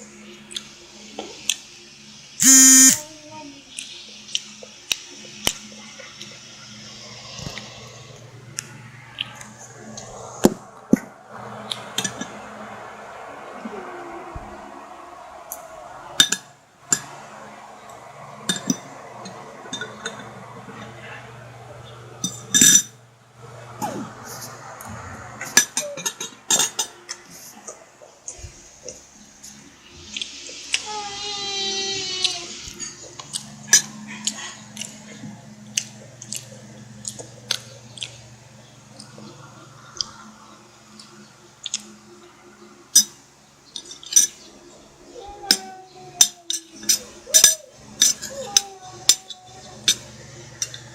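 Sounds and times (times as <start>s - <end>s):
utensils clinking on tableware: 25.6s - 27.2s.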